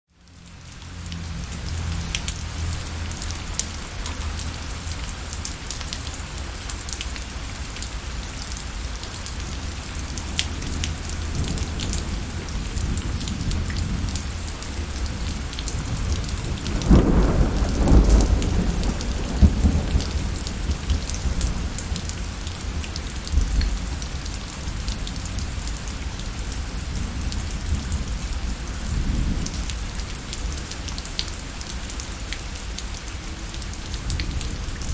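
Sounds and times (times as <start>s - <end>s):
raindrops ticking on a surface: 0.1s - 34.9s
steady rain falling: 0.1s - 34.9s
low rumble of thunder: 9.3s - 31.2s.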